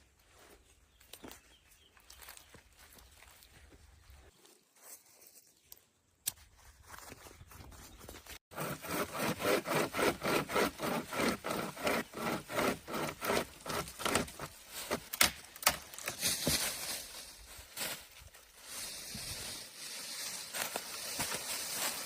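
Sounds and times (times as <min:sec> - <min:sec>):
hand saw cutting wood: 0:08.5 - 0:15.3.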